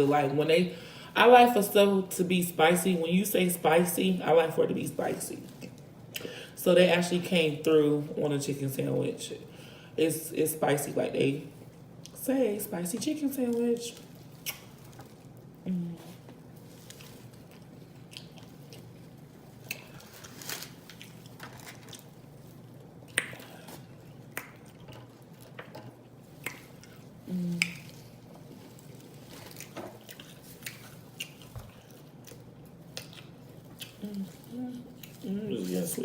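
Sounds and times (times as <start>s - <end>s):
person chewing food: 14.0s - 35.8s
wet mouth clicks and smacks: 14.4s - 14.7s, 23.1s - 23.6s, 24.3s - 24.8s, 27.6s - 27.9s.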